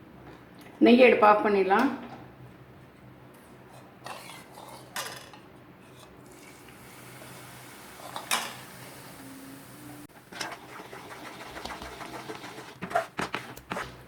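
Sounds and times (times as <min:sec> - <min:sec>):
metal spoon scraping a pan: 0:03.7 - 0:05.0.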